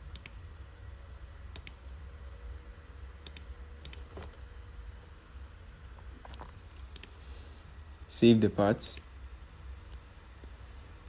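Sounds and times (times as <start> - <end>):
low steady hum: 0.0 - 11.0
computer mouse clicking: 0.1 - 0.4, 1.5 - 1.8, 3.2 - 4.4, 6.3 - 7.2.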